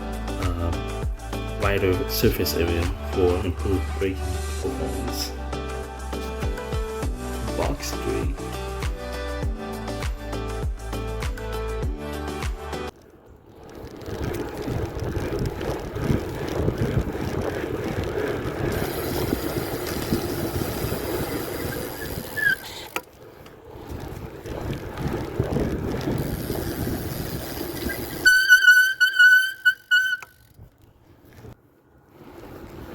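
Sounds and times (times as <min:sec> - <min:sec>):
bicycle tyre road noise: 0:00.0 - 0:32.9
short high squeak: 0:21.2 - 0:23.0, 0:27.8 - 0:30.6.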